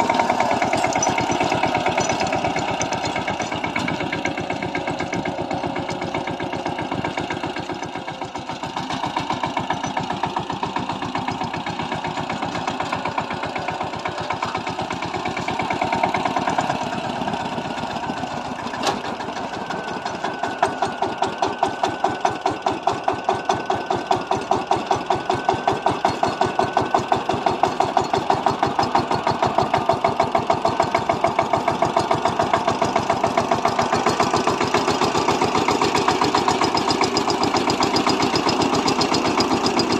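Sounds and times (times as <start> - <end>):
power tiller diesel engine running: 0.0 - 39.9.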